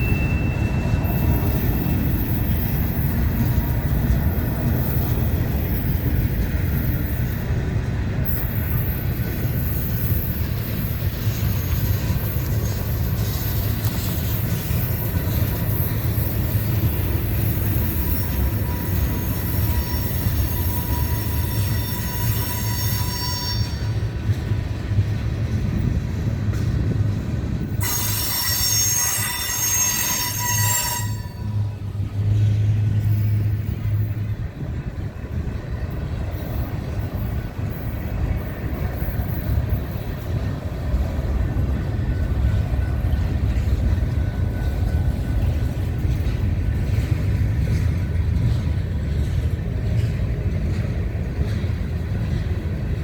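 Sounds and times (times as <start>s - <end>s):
train wheels rumbling on rail: 0.0s - 53.0s
high-pitched wheel squeal: 8.3s - 24.1s, 27.8s - 31.8s.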